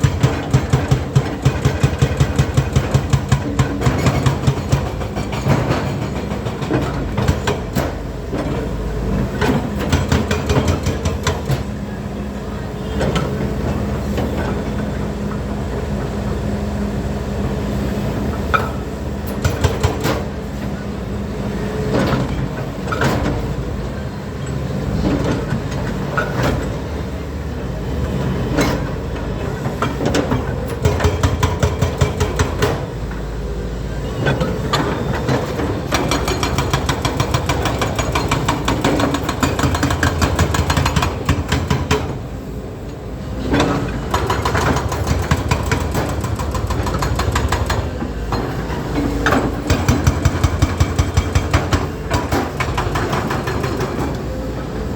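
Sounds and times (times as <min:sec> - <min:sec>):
metal clanks and knocks: 0:00.0 - 0:11.8, 0:43.4 - 0:54.3
excavator diesel engine running: 0:00.0 - 0:54.9.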